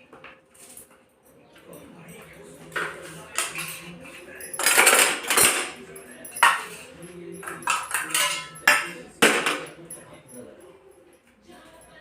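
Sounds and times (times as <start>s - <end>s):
sharp metal clinks: 1.3s - 11.0s
metal utensils scraping a pot: 2.8s - 9.0s.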